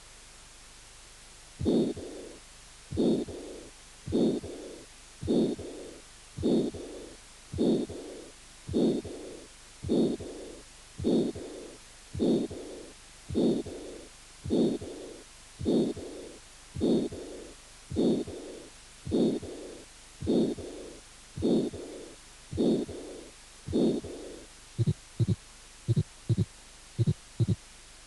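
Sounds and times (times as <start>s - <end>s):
heartbeat through stethoscope: 1.6s - 2.3s, 2.9s - 27.6s
systolic heart murmur: 1.6s - 27.6s
faint diastolic heart murmur: 1.6s - 27.7s.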